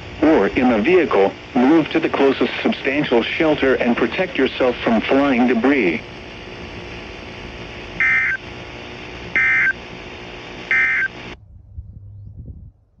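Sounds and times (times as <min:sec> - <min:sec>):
radio hiss: 0:00.0 - 0:11.4
data tone bursts: 0:00.2 - 0:06.0, 0:08.0 - 0:08.5, 0:09.3 - 0:09.9, 0:10.6 - 0:11.4.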